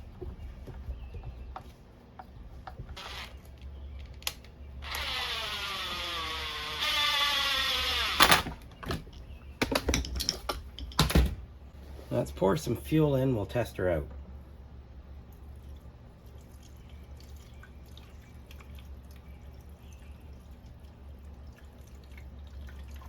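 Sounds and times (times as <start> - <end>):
cordless drill whining: 3.0 - 3.4, 4.8 - 8.5
parts clicking and clattering: 7.8 - 11.5.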